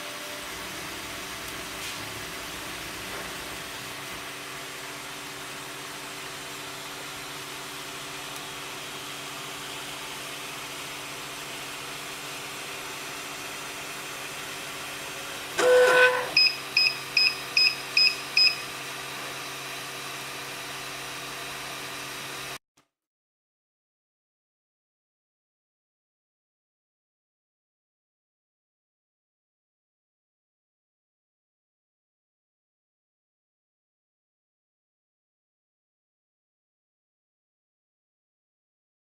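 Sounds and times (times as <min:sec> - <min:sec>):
printer fans and motors whirring: 0:15.0 - 0:19.6
loud electronic tone: 0:15.6 - 0:18.7.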